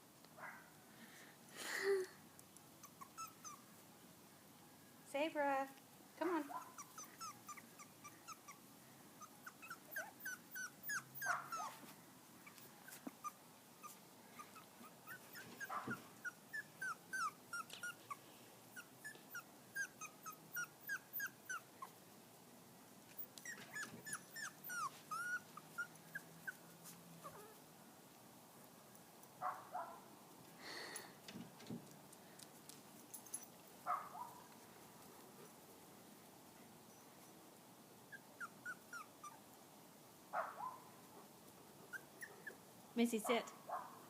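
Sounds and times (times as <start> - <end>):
puppies whimpering: 2.8 - 3.6, 6.6 - 8.6, 9.2 - 11.8, 12.4 - 18.2, 18.8 - 21.9, 23.2 - 26.6, 38.1 - 39.4.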